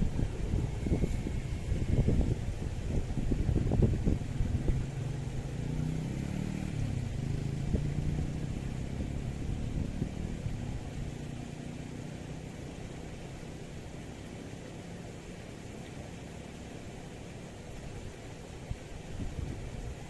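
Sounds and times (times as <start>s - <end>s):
engine passing by: 0.0s - 15.0s
steady rushing noise: 0.0s - 20.0s.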